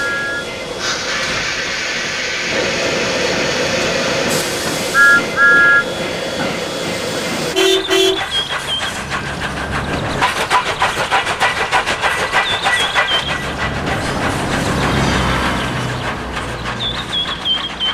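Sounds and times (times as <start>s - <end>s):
steam chuffing and clanking: 0.0s - 17.9s
steam whistle toots: 4.9s - 5.9s, 7.5s - 8.5s.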